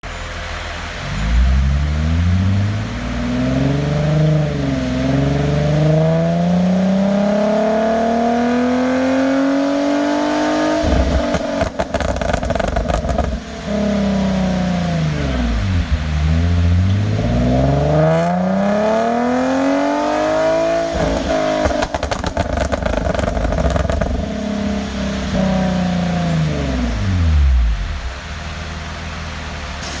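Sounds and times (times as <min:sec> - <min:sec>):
car engine revving: 0:00.5 - 0:29.7
exhaust pops and crackles: 0:10.5 - 0:17.3, 0:18.0 - 0:25.8.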